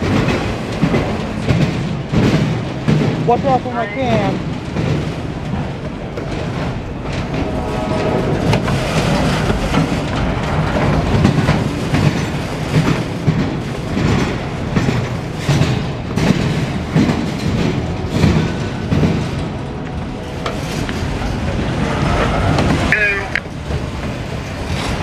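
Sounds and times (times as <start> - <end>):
freight train rumble: 0.0 - 25.0
wheels clickety-clack over rail joints: 0.0 - 25.0.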